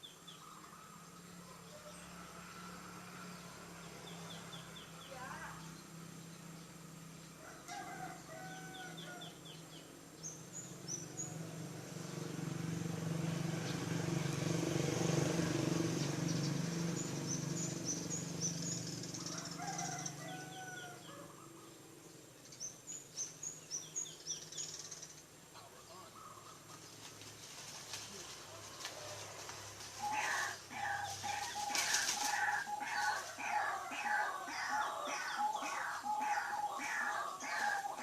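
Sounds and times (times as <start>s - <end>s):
bird chirps and trills: 15.0s - 27.0s, 29.9s - 38.0s.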